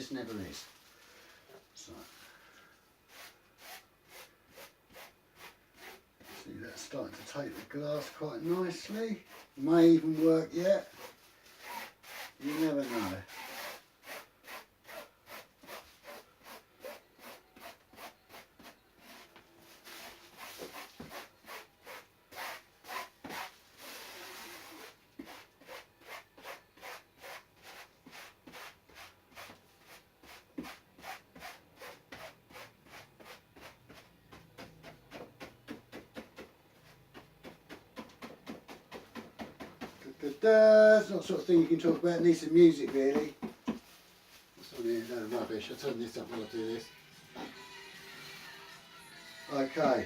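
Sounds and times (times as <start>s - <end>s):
rubbing resin into cloth: 5.8s - 13.8s.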